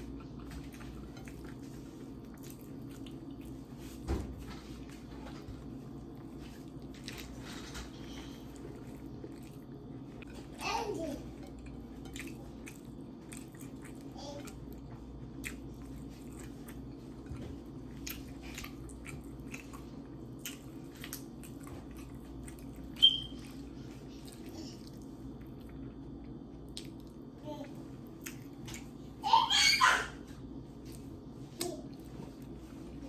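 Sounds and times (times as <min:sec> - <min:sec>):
chewing and biting food: 0:00.0 - 0:03.9, 0:06.0 - 0:10.6, 0:11.4 - 0:27.3, 0:28.0 - 0:29.0.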